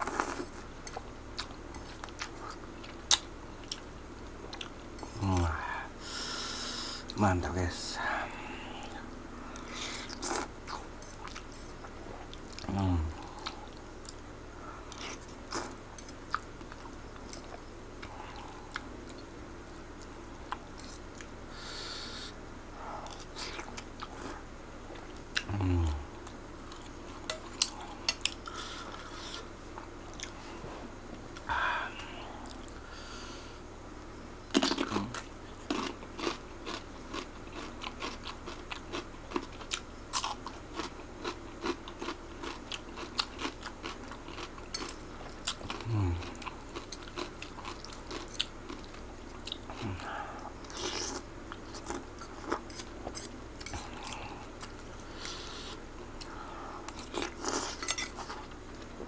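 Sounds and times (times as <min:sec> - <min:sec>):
chewing with wet mouth clicks: 0:00.1 - 0:05.1, 0:34.5 - 0:49.8.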